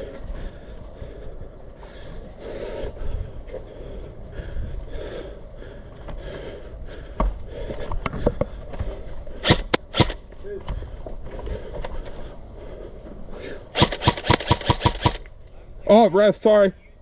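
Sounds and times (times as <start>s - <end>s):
sharp clicks: 9.4s - 10.2s, 13.8s - 15.6s.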